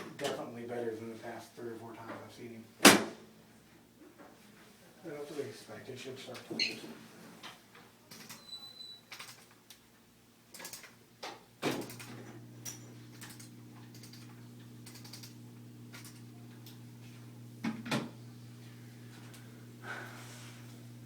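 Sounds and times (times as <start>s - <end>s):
electric device humming: 11.7s - 21.0s.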